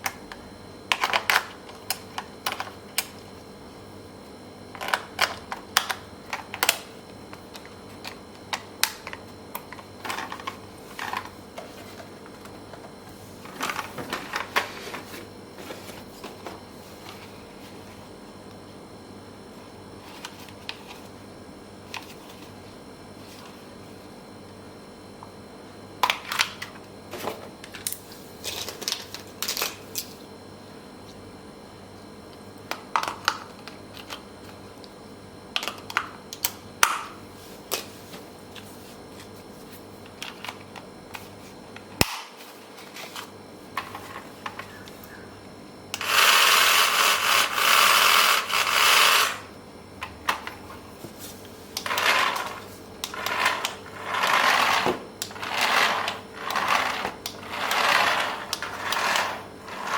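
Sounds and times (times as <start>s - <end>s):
packaging and plastic parts rustling: 9.0s - 12.8s, 13.4s - 17.4s.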